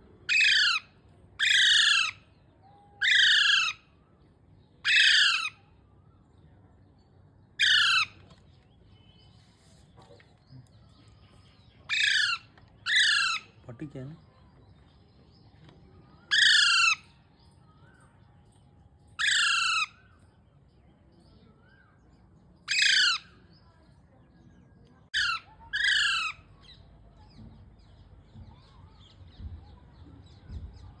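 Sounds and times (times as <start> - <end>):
parrot harsh calls: 0.3 - 2.2, 3.0 - 3.8, 4.8 - 5.6, 7.6 - 8.1, 11.9 - 13.6, 16.3 - 17.1, 19.2 - 20.0, 22.7 - 23.3, 25.2 - 26.5
faint soft chirps: 8.2 - 12.8, 17.2 - 19.2, 20.0 - 22.6.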